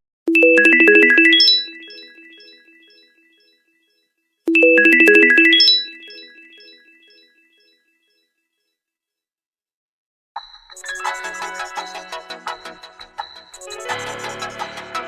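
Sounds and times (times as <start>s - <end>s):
synthesized phone ringtone: 0.3s - 3.1s, 4.5s - 7.2s.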